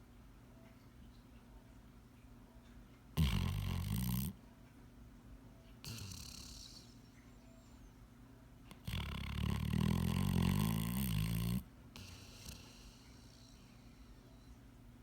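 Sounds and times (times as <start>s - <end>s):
dog snoring: 3.2s - 4.4s, 5.8s - 7.0s, 8.7s - 14.5s.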